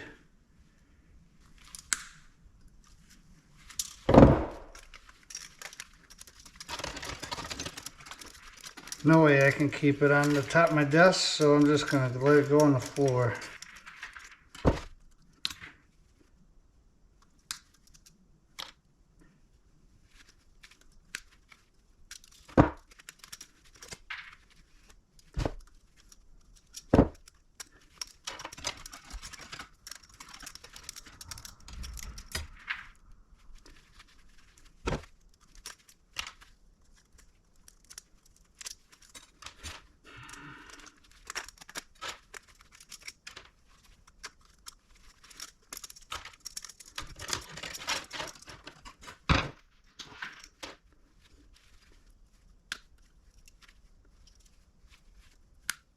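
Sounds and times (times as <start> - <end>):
metal pieces clicking and knocking: 4.7 - 15.7, 22.0 - 33.1, 34.6 - 49.3
scrap scraping and tearing: 4.8 - 14.9.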